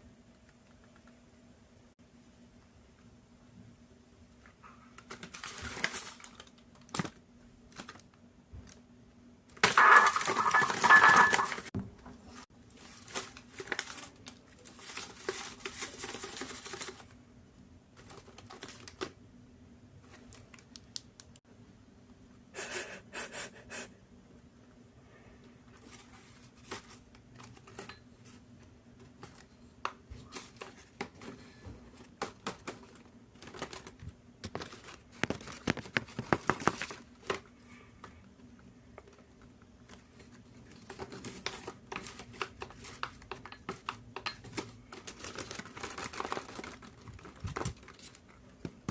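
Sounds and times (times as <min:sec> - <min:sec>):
paper rustling and crinkling: 0:04.9 - 0:08.8, 0:09.6 - 0:17.2, 0:17.9 - 0:19.2, 0:25.7 - 0:38.2, 0:39.0 - 0:48.9.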